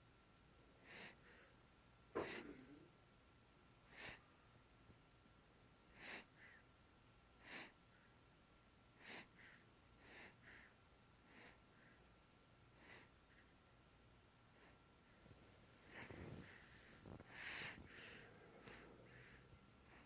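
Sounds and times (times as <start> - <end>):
heavy breathing: 2.2 - 2.8, 14.5 - 20.0.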